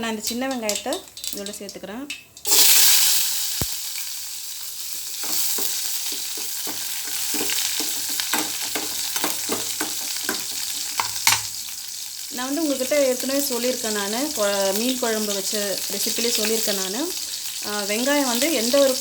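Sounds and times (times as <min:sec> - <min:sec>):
onions sizzling in hot oil: 0:00.0 - 0:19.0
utensil scraping a pan: 0:05.1 - 0:11.4.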